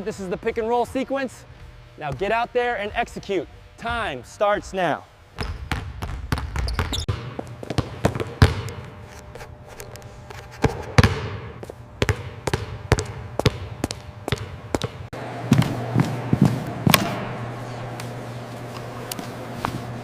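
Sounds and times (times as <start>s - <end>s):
basketballs bouncing on gym floor: 2.1s - 2.4s, 5.4s - 8.9s, 10.6s - 17.2s.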